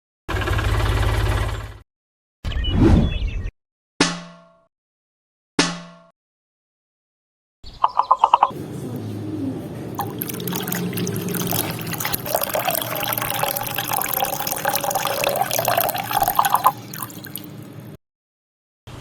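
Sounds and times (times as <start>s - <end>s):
water pouring and trickling: 9.9s - 17.9s.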